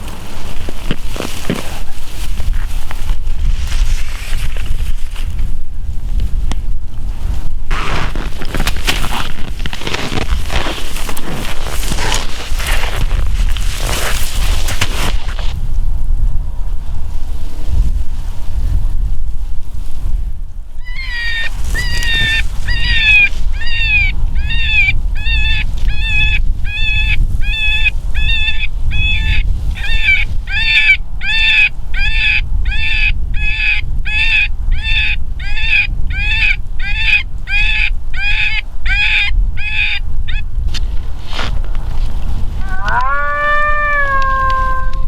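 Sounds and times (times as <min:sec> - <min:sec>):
wind rumbling on microphone: 0:00.0 - 0:45.0
predator call distress cries: 0:20.8 - 0:40.0, 0:42.6 - 0:45.0.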